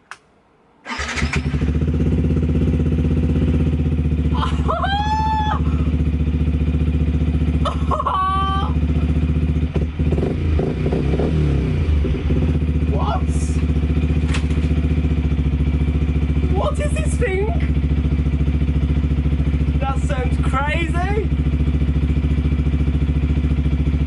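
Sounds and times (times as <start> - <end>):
motorcycle engine starting and idling: 0.8 - 24.0
person calling out: 4.3 - 6.0, 7.7 - 8.8, 12.9 - 13.7, 16.5 - 17.8.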